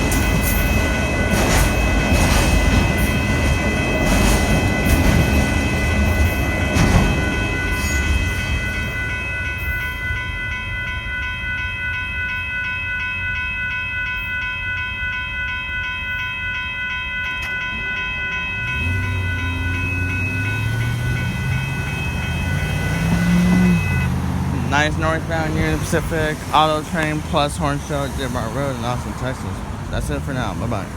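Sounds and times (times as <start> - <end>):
train cars rumbling and clattering: 0.0 - 12.4, 16.6 - 30.9
crossing warning bell dinging: 0.0 - 30.9
vehicle engine revving: 18.6 - 30.9.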